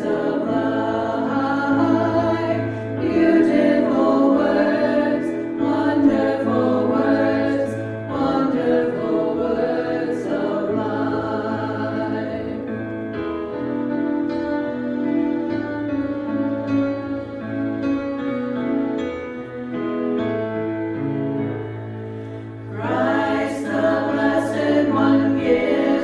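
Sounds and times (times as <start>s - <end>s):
group singing held notes: 0.0s - 12.7s, 22.7s - 26.0s.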